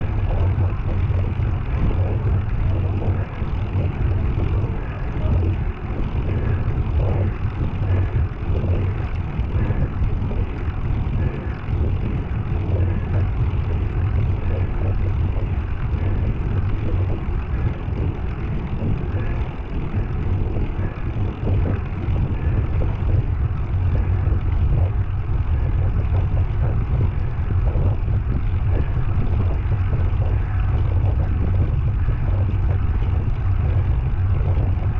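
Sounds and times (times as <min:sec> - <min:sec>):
steady low rumble: 0:00.0 - 0:34.9
person breathing heavily: 0:00.1 - 0:33.8.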